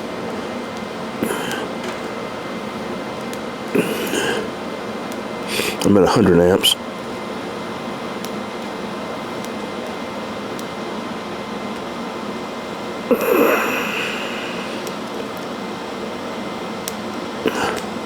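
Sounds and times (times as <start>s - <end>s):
welding arc hissing: 0.3s - 4.6s, 5.2s - 6.7s.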